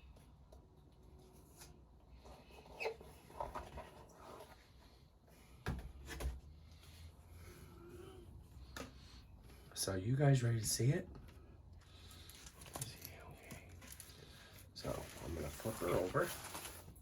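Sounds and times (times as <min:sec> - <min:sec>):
quiet handling noises: 0:11.1 - 0:17.0.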